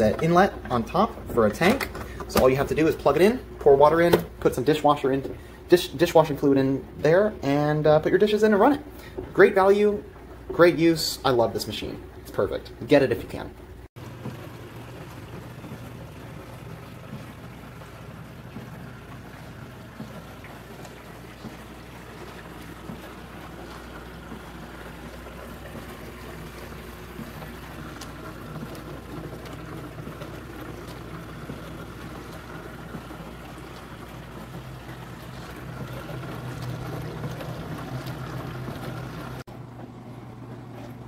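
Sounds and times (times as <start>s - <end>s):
dishwasher motor hum: 0.0s - 41.0s
spraying water: 14.0s - 39.5s.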